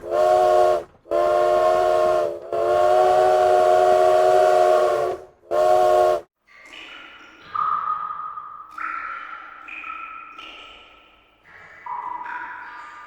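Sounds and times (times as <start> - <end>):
steam locomotive whistle blasts: 0.0 - 6.3.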